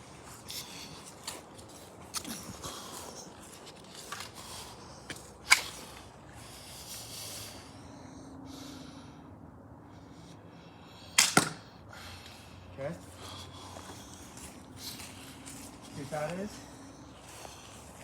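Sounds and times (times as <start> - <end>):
bb gun shots: 11.2 - 11.7.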